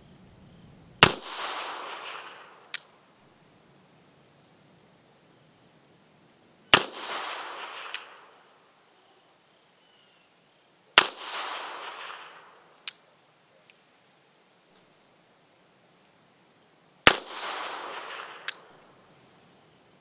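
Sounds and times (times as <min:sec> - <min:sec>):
revolver shots with echo: 0:06.7 - 0:08.3, 0:11.0 - 0:12.6.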